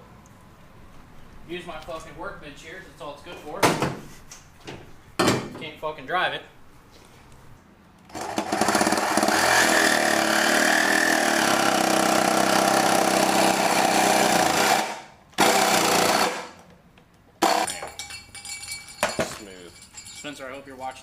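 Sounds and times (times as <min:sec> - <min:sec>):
reciprocating saw cutting metal pipe: 0:08.2 - 0:16.4.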